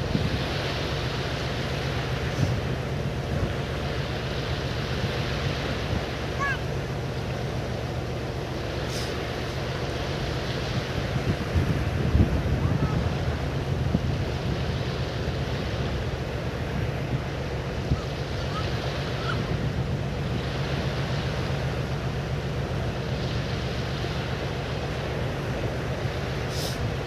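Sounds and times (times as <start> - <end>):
wind on microphone: 0.0 - 1.0, 10.3 - 21.3
rushing water: 0.0 - 27.0.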